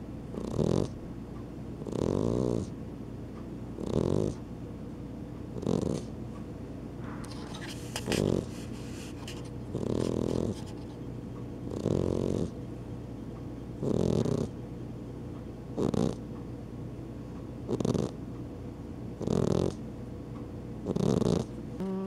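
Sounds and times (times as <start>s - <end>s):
cat snoring: 0.3s - 1.0s, 1.8s - 2.7s, 3.8s - 4.4s, 5.6s - 6.1s, 8.0s - 9.0s, 9.7s - 10.6s, 11.7s - 12.5s, 13.8s - 14.5s, 15.8s - 16.2s, 17.7s - 18.2s, 19.2s - 19.8s, 20.8s - 22.0s.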